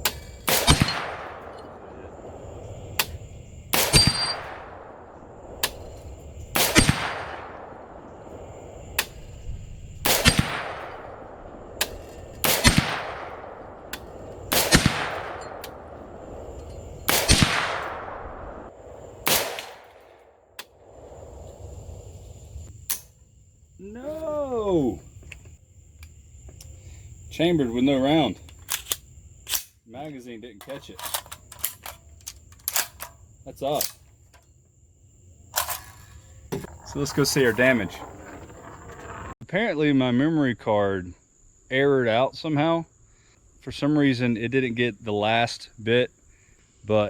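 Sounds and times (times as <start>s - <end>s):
rifle shots: 0.0s - 9.4s, 10.0s - 20.9s.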